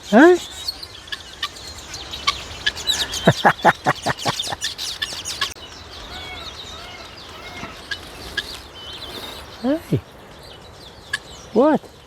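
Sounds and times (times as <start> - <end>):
small birds chirping: 0.0 - 12.0
fowl harsh descending call: 2.8 - 4.7.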